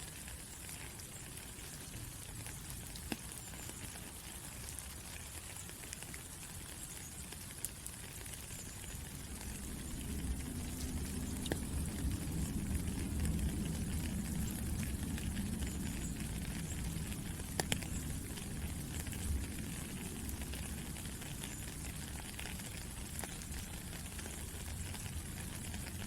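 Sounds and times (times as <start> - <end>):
steady rain hiss: 0.0 - 26.0
low rumble: 9.5 - 16.2.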